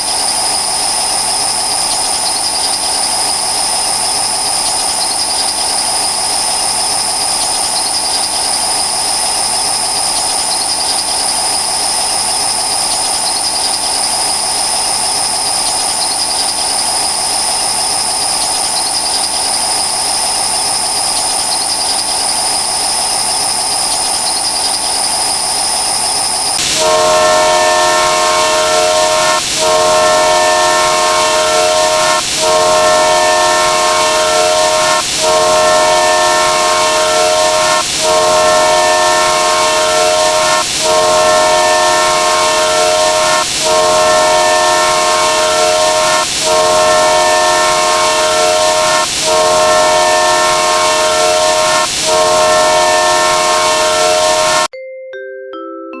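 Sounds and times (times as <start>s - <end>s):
steady rushing hiss: 26.4s - 54.7s
train chord horn blasts: 26.6s - 54.7s.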